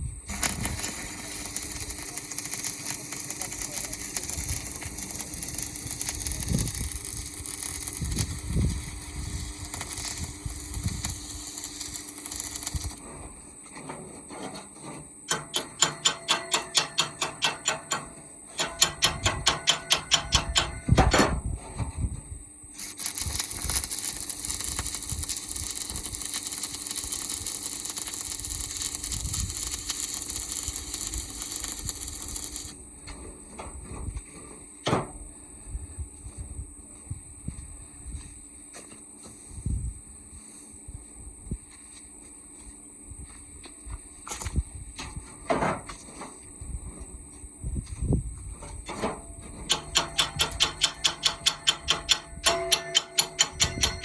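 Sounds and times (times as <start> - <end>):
steady high hiss: 0.0 - 13.0, 22.7 - 32.8
hammer blows on metal: 15.3 - 21.4, 49.0 - 54.0.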